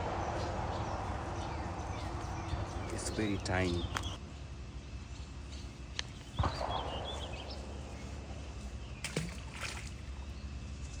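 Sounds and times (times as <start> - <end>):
small birds chirping: 0.0 - 11.0
splash in water: 9.0 - 10.0.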